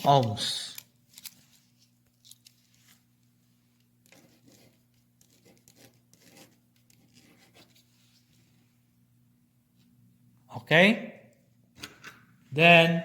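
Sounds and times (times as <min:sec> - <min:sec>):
faint rustles and clicks: 0:00.0 - 0:08.7.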